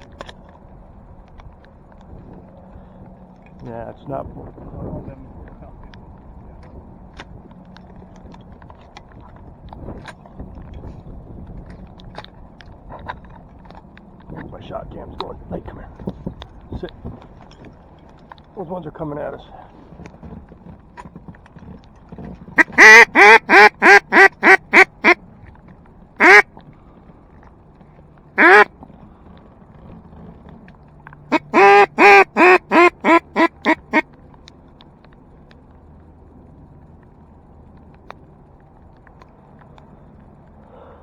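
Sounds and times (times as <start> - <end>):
duck call quacking: 22.6 - 25.2, 26.2 - 26.4, 28.4 - 28.7, 31.3 - 34.0.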